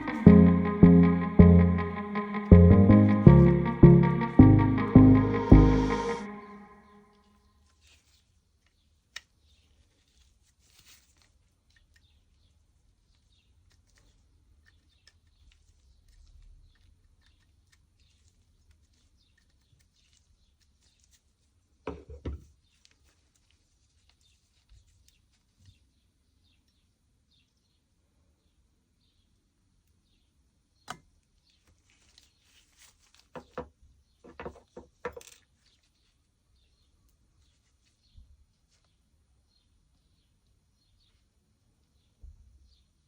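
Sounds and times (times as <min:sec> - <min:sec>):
faint clicks of small parts: 0:07.6 - 0:21.6, 0:22.5 - 0:25.9, 0:34.5 - 0:36.2.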